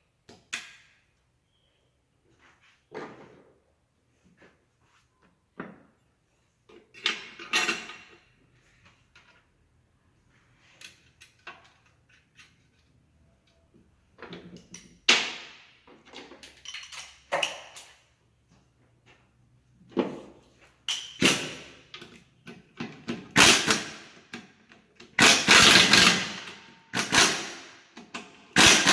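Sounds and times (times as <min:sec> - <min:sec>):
metal parts and tools clattering: 0:06.7 - 0:09.5, 0:15.9 - 0:18.0.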